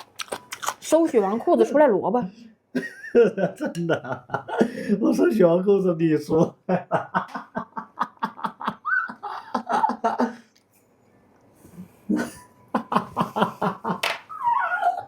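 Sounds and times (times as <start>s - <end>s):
person laughing: 2.8s - 4.8s, 6.4s - 10.4s, 12.1s - 15.0s.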